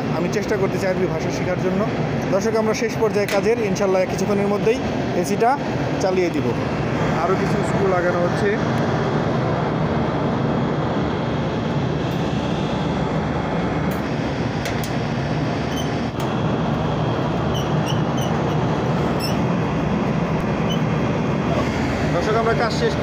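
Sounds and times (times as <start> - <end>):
mechanical drone with hum: 0.0 - 23.0.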